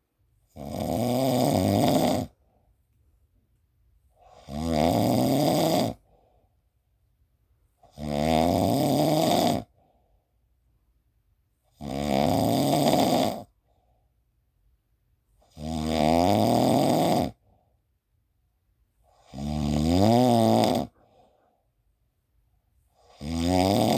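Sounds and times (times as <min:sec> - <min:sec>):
person snoring: 0:00.5 - 0:02.4, 0:04.2 - 0:06.0, 0:07.9 - 0:09.7, 0:11.8 - 0:13.5, 0:15.5 - 0:17.4, 0:19.2 - 0:21.0, 0:23.0 - 0:23.9
faint breath: 0:06.0 - 0:06.7, 0:20.9 - 0:21.8.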